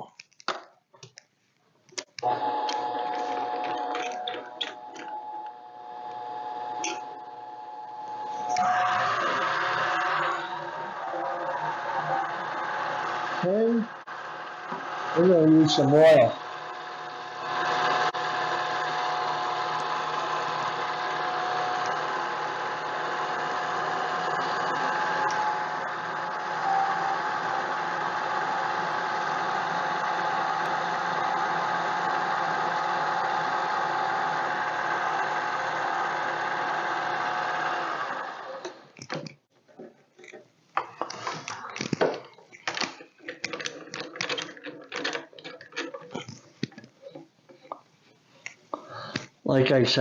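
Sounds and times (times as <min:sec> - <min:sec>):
lathe motor whining: 0:02.2 - 0:39.0
clicks and handling knocks: 0:38.6 - 0:49.3.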